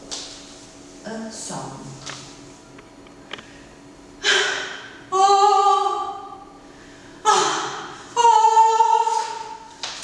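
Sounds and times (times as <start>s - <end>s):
woman singing wordless notes: 5.1s - 6.4s, 7.2s - 9.7s.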